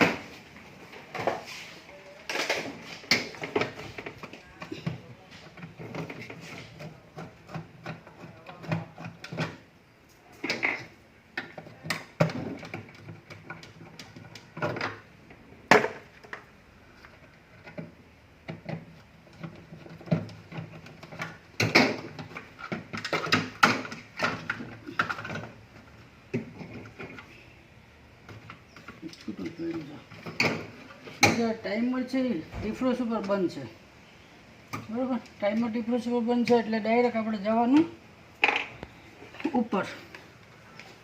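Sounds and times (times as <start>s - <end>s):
tools clicking and knocking: 2.3s - 9.7s, 10.4s - 16.5s.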